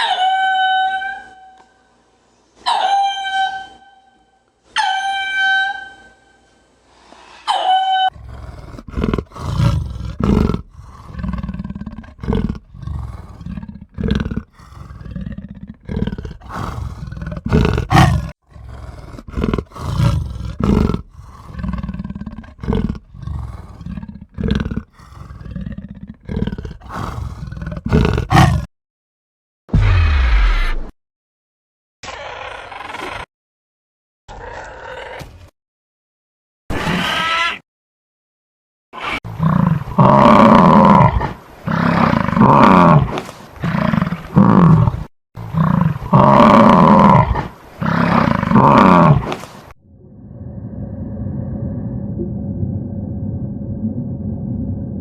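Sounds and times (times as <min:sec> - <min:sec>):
deep rough animal calls: 0:08.2 - 0:28.7, 0:45.5 - 0:55.0.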